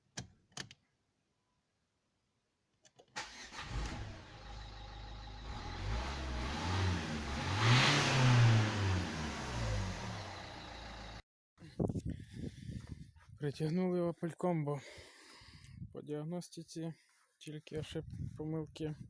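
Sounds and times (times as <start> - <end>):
diesel engine revving: 3.2 - 11.2.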